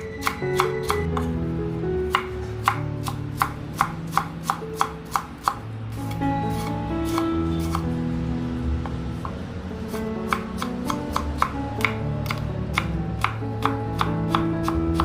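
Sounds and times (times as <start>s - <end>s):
knife chopping on cutting board: 0.2s - 1.3s, 2.1s - 5.6s, 10.2s - 15.0s.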